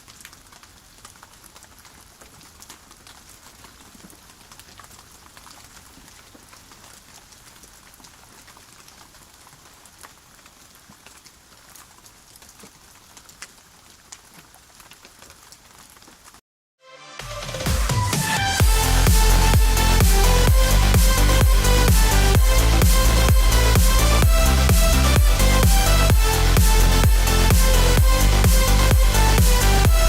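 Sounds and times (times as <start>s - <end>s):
raindrops ticking: 0.0s - 16.4s
steady rain hiss: 0.0s - 16.4s, 18.6s - 29.9s.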